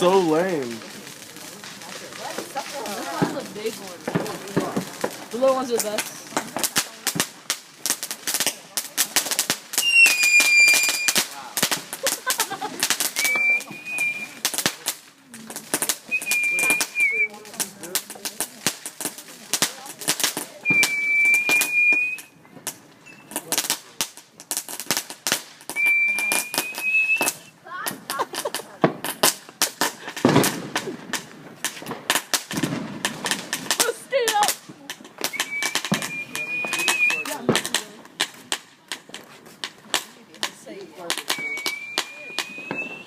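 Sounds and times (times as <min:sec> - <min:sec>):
fireworks crackling pops: 0:00.0 - 0:43.0
firework high whistle: 0:09.7 - 0:11.4, 0:13.0 - 0:14.6, 0:16.0 - 0:17.4, 0:20.5 - 0:22.4, 0:23.0 - 0:23.5, 0:25.7 - 0:27.5, 0:35.2 - 0:37.5, 0:41.2 - 0:43.0.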